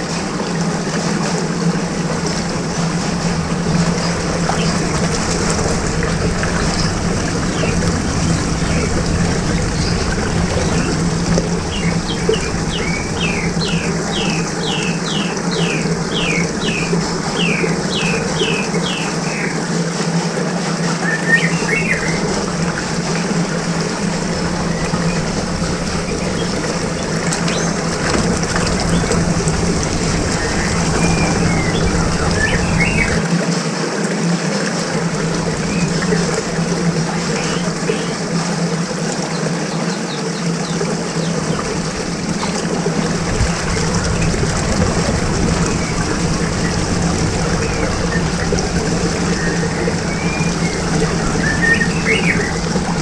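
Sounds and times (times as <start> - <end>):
low hum: 0.0 - 19.6, 21.5 - 33.3, 34.7 - 39.1, 40.6 - 53.0
rushing churning water: 0.0 - 53.0
bird chirping: 21.1 - 33.2.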